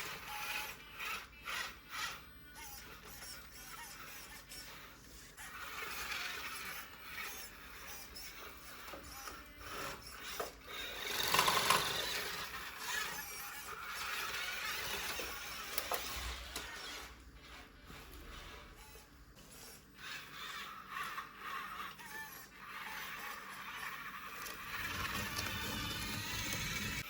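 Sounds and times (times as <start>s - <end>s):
toy car motor whining: 0.0s - 27.0s.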